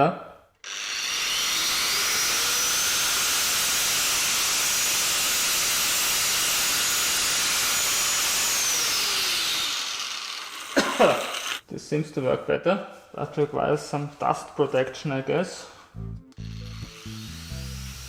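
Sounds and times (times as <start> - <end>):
angle grinder grinding rust: 0.6 - 11.6, 16.4 - 18.0.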